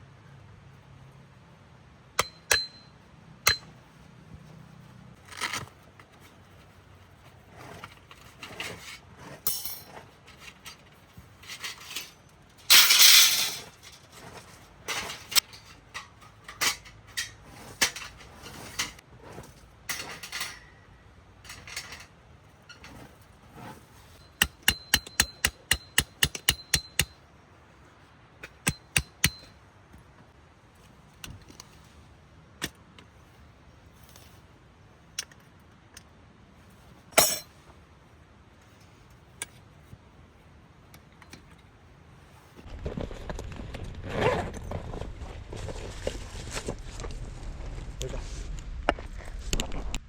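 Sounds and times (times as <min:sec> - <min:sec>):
rustling shuffling noise: 0:04.4 - 0:20.4, 0:21.6 - 0:24.2, 0:42.2 - 0:50.0
clicks and clinks: 0:11.4 - 0:14.1
sharp metallic taps: 0:24.4 - 0:27.2.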